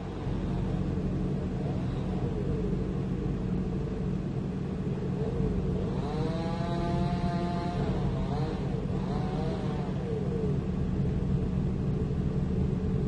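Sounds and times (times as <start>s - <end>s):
heavy diesel engine rumbling: 0.0s - 13.0s.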